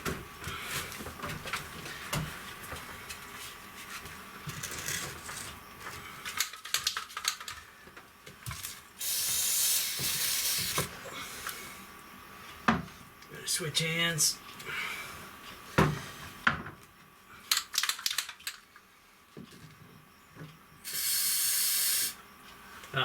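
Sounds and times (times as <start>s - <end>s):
aerosol can spraying hiss: 9.0s - 10.9s, 20.8s - 22.2s.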